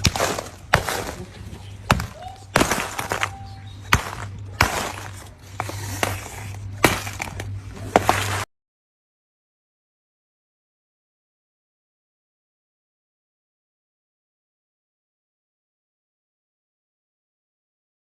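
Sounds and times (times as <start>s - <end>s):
crumbling crackle: 0.0s - 8.5s
hammer cracking clay chunks: 0.0s - 8.5s
steady low hum: 0.0s - 8.5s.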